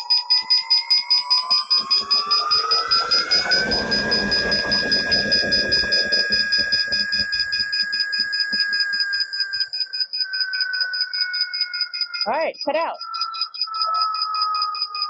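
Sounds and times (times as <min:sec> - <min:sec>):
electric motor whine: 0:00.0 - 0:12.2
rapid high alarm beeps: 0:00.0 - 0:15.0
rumbling noise: 0:01.7 - 0:08.2.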